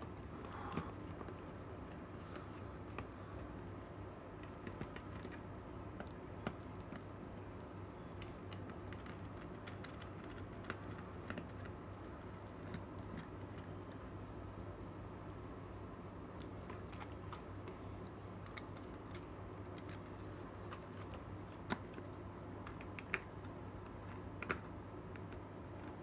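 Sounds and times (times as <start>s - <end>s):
light clicks and taps: 0.1s - 14.2s, 16.3s - 26.0s.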